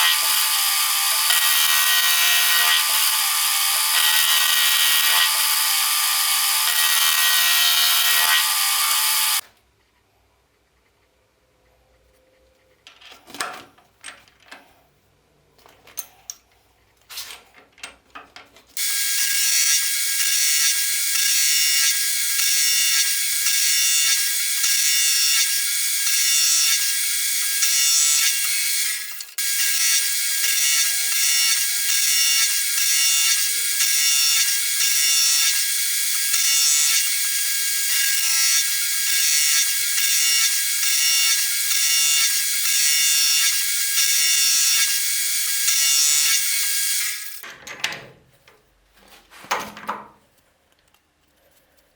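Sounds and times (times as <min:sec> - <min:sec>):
machine tool running pulsing: 0:00.0 - 0:09.4, 0:18.8 - 0:47.4.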